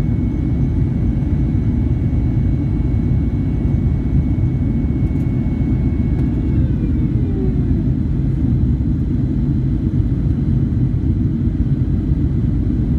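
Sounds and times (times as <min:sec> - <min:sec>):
jet engine and airflow rumble: 0:00.0 - 0:12.9
faint whine gliding down: 0:01.8 - 0:08.7.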